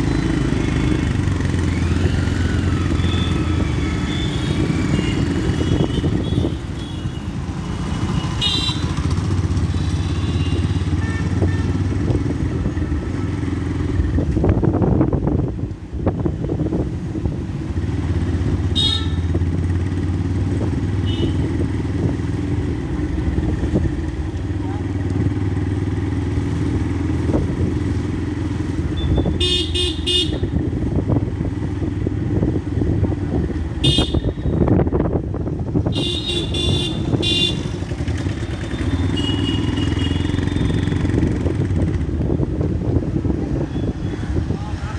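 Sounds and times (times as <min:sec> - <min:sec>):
motorcycle engine running: 0:00.0 - 0:15.1, 0:16.9 - 0:44.8
vehicle horn tooting: 0:03.2 - 0:07.2, 0:08.2 - 0:11.8, 0:18.7 - 0:19.4, 0:21.0 - 0:21.5, 0:28.9 - 0:30.6, 0:33.8 - 0:34.7, 0:35.9 - 0:38.0, 0:38.6 - 0:40.8.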